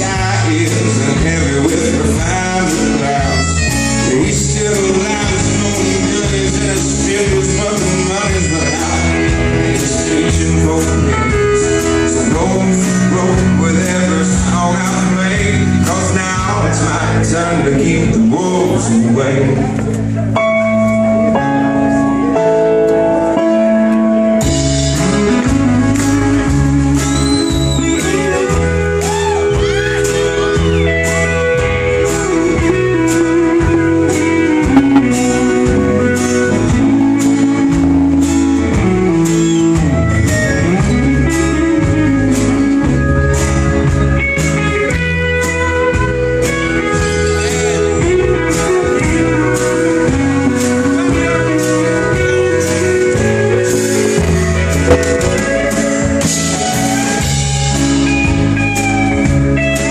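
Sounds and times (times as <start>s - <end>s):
bass: 0.0s - 59.9s
lead guitar solo: 2.7s - 4.4s, 19.6s - 59.9s
steady drum beat: 32.3s - 37.0s, 50.1s - 57.6s.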